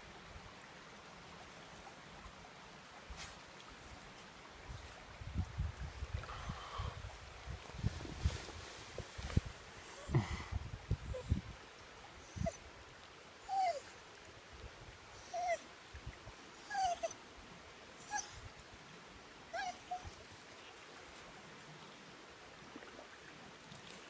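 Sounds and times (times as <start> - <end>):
dog whining: 13.4 - 13.9, 15.2 - 15.6, 16.6 - 17.1, 18.0 - 18.4, 19.5 - 20.2.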